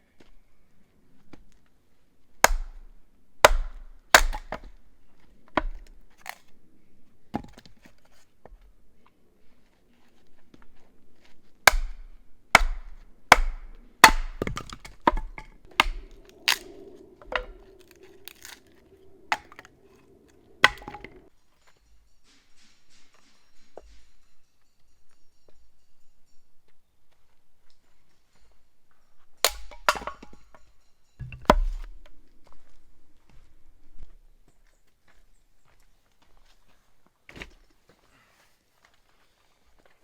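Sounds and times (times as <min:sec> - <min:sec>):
blade chopping into wood: 0:02.5 - 0:02.9, 0:03.5 - 0:04.7, 0:11.7 - 0:18.7, 0:19.3 - 0:19.7, 0:20.6 - 0:21.2, 0:29.5 - 0:30.4.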